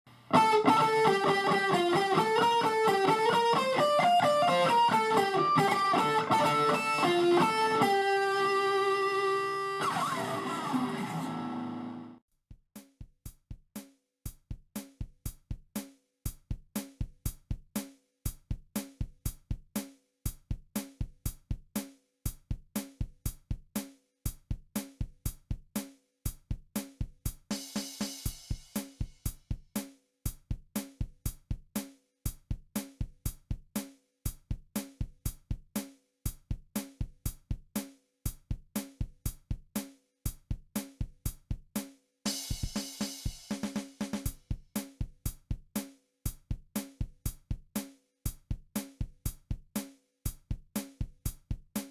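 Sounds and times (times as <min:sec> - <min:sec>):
drums: 0:00.1 - 0:51.9
electric guitar staccato chords: 0:00.3 - 0:09.0.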